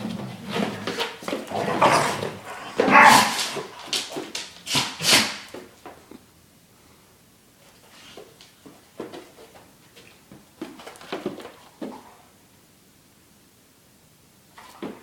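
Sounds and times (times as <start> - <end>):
dogs growling and yipping: 0.0 - 3.9.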